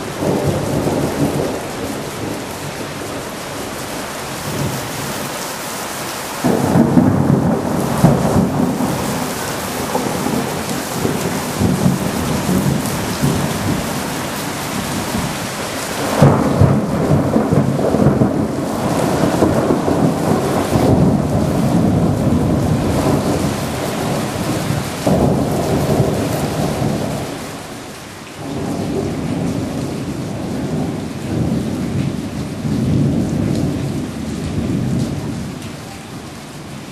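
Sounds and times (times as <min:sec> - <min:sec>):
thunder rumbling: 0:00.0 - 0:05.4, 0:06.4 - 0:27.7, 0:28.4 - 0:36.9
rain falling: 0:00.0 - 0:36.9
loud thunder clap: 0:06.4 - 0:27.4, 0:28.4 - 0:35.6.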